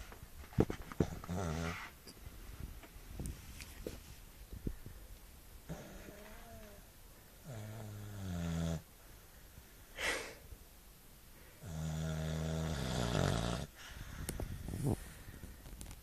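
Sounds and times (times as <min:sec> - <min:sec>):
dog snoring: 0:01.0 - 0:01.9, 0:05.7 - 0:06.8, 0:07.4 - 0:08.9, 0:11.6 - 0:13.8.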